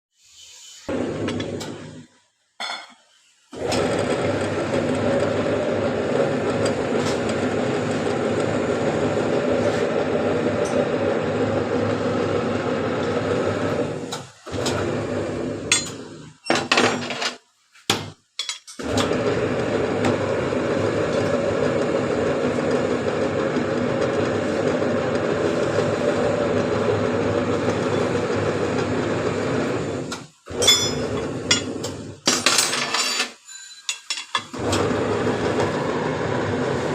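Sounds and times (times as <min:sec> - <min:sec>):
metalworking noise: 0:15.7 - 0:17.4, 0:30.5 - 0:34.6.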